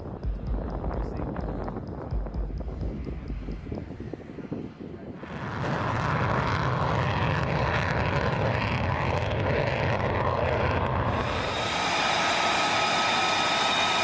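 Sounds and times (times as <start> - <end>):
aircraft engine roaring: 3.4 - 14.0.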